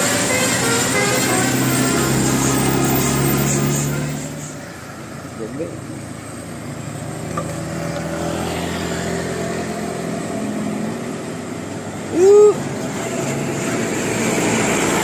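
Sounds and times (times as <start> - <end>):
bus horn blast: 0.0 - 4.5
bus engine running: 0.0 - 15.0.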